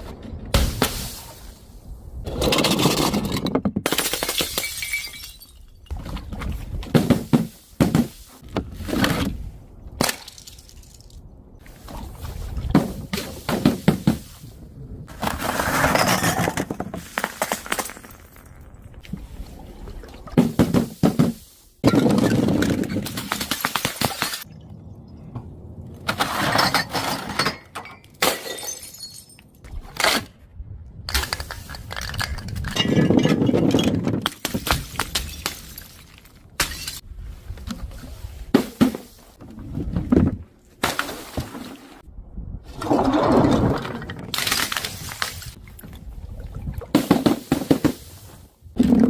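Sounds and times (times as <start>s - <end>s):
glass bottles breaking and crushing: 2.5s - 5.9s, 21.8s - 24.6s, 26.1s - 29.6s, 32.0s - 37.0s.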